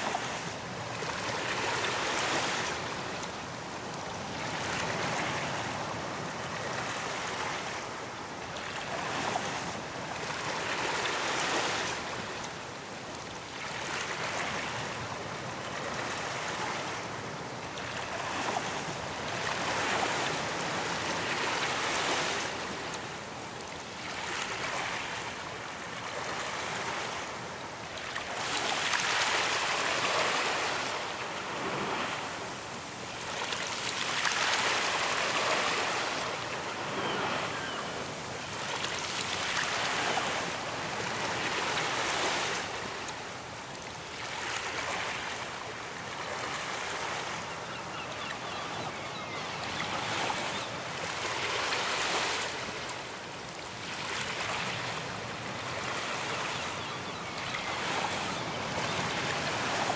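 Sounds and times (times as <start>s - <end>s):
ocean waves breaking: 28.2s - 42.9s.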